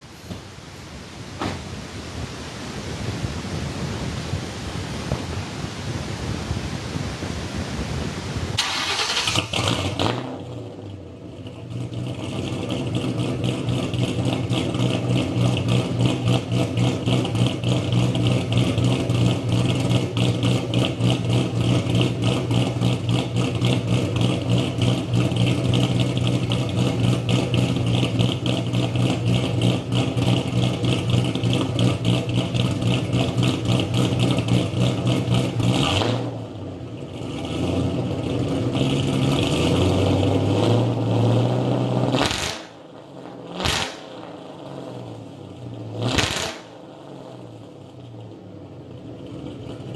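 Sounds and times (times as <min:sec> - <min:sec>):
car engine idling loudly: 0:03.4 - 0:41.1, 0:42.6 - 0:49.9
engine revving bursts: 0:08.6 - 0:10.9, 0:37.2 - 0:45.1, 0:45.9 - 0:47.6.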